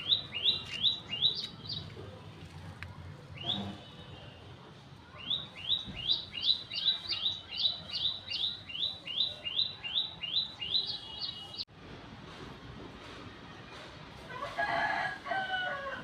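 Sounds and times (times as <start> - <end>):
bird chirping: 0.0 - 1.9, 5.2 - 11.6.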